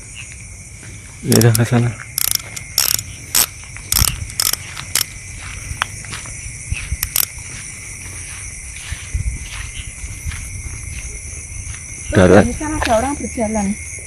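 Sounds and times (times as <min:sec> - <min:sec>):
crickets and insects chorus: 0:00.0 - 0:14.0
footsteps crunching on dry ground: 0:02.4 - 0:12.1.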